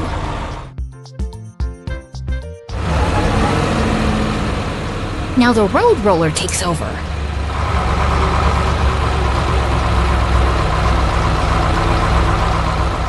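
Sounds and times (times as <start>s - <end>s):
road roller engine rumbling: 0.0s - 0.7s, 2.7s - 13.0s.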